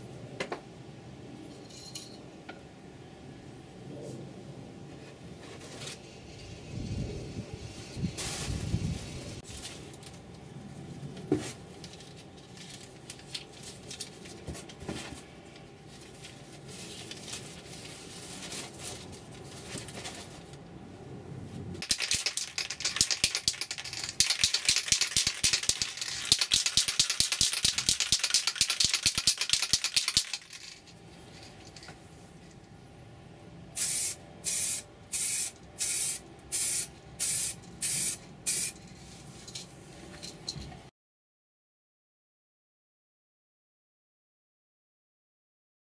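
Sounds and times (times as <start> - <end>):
spray can ball rattling: 21.8 - 30.8, 33.8 - 38.8.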